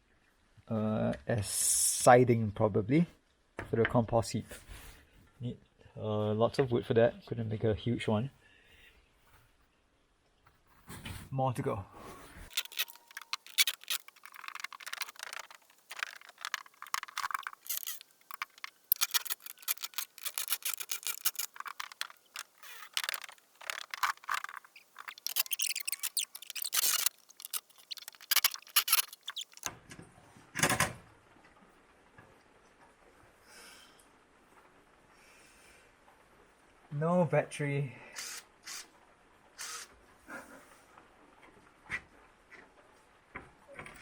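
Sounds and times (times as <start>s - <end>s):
screws and planks squeaking: 12.4s - 29.7s.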